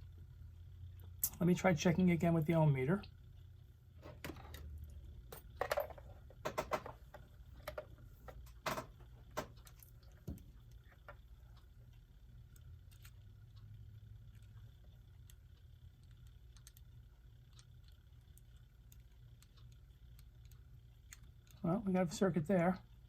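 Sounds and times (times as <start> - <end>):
faint low hum: 0.0 - 23.0
light clicks of small parts: 9.3 - 21.7.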